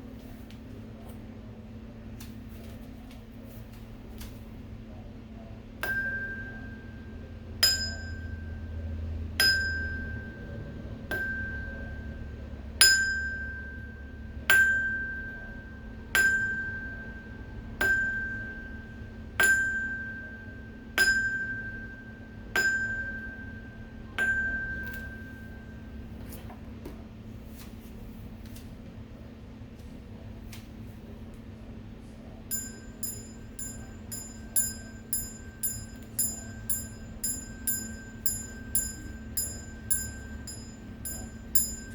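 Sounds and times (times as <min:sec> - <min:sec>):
steady low hum: 0:00.0 - 0:41.9
small bell strikes: 0:07.6 - 0:08.7, 0:09.4 - 0:10.5, 0:11.1 - 0:15.5, 0:16.2 - 0:25.7, 0:32.5 - 0:41.9.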